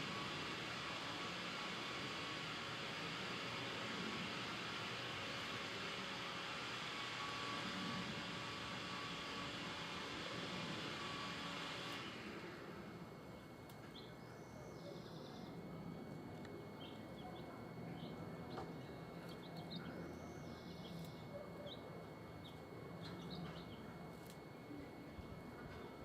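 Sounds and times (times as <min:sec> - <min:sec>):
faint low hum: 0:00.0 - 0:26.0
birds chirping: 0:13.3 - 0:15.8, 0:16.4 - 0:24.1
buzzy bird trills: 0:16.7 - 0:24.2.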